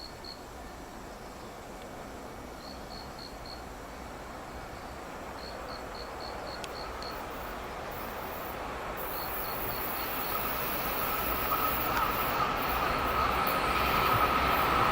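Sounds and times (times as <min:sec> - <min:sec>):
insects chirping: 0:00.0 - 0:00.5, 0:02.6 - 0:14.9
steady train tone: 0:02.6 - 0:14.9
electric train rumble: 0:03.5 - 0:14.9
rails hissing: 0:06.7 - 0:14.9.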